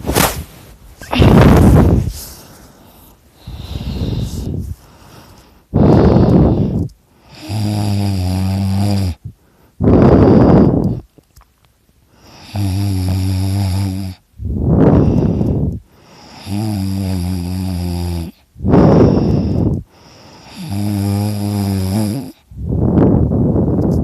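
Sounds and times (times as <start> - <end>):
noisy breaths: 0.0 - 11.3, 12.0 - 24.0
person snoring loudly: 5.7 - 11.0, 12.2 - 23.0.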